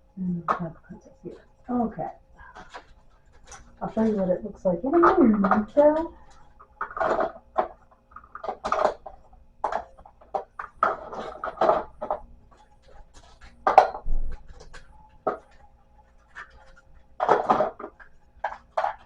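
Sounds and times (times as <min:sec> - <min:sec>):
pens and pencils clattering: 0:00.5 - 0:19.0.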